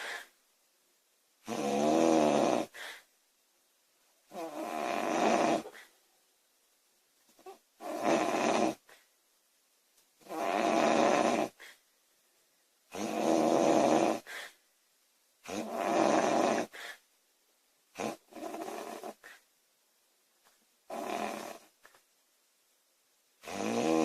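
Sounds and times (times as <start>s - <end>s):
girl snoring loudly: 1.5s - 2.8s, 4.3s - 5.8s, 7.8s - 8.8s, 10.2s - 11.6s, 12.9s - 14.4s, 15.5s - 16.8s, 18.0s - 19.2s, 20.9s - 21.7s, 23.4s - 24.0s.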